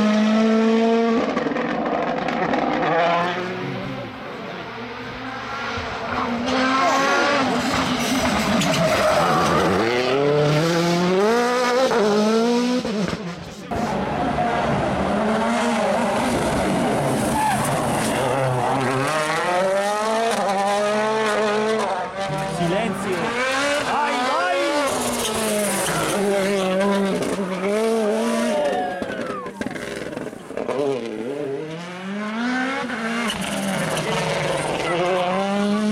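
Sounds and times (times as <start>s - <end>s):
rally car engines revving: 0.0s - 35.9s.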